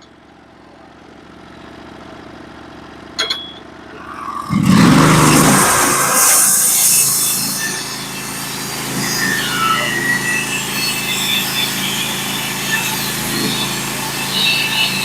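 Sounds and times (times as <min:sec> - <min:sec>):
band saw blade cutting log: 0:03.9 - 0:15.0.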